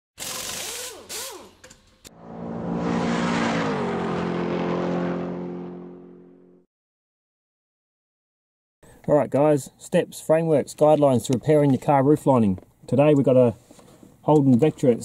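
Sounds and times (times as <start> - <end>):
car engine revving: 2.1 - 6.6.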